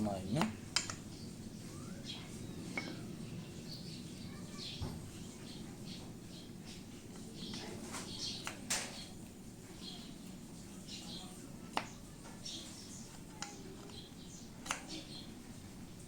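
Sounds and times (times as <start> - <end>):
faint high squeaks: 1.6 - 3.2
light metal clicks: 13.3 - 15.0.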